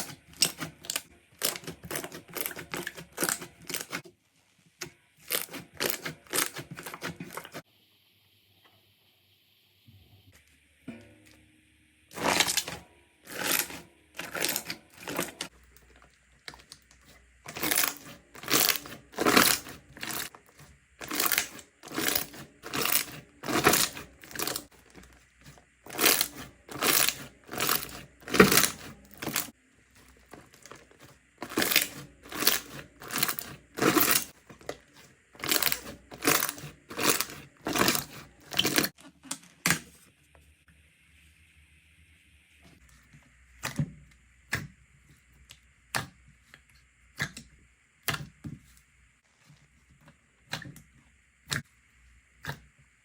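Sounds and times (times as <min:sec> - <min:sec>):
slime squishing by hand: 0:00.0 - 0:07.6, 0:12.1 - 0:40.0.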